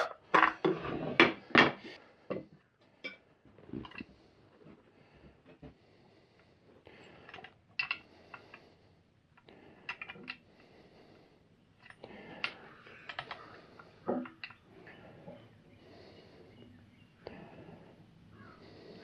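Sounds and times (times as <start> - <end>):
metal clicks of hand tools: 7.2 - 8.6.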